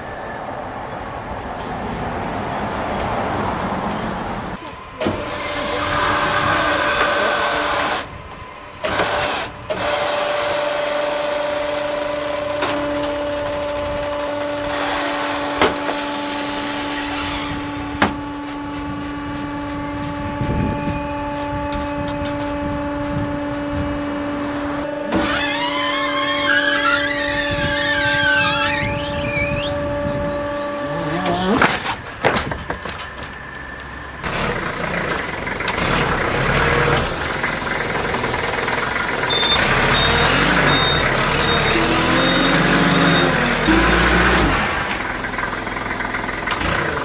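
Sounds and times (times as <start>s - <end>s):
hydraulic power unit humming: 2.6s - 47.0s
wavering high squeals: 3.9s - 47.0s.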